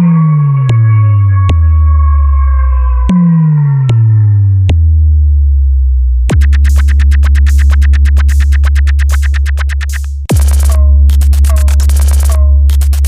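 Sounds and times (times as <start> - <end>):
falling bass sweep: 0.0 - 13.0
electronic dance music with bass: 6.3 - 13.0
fast drum roll: 6.3 - 13.0.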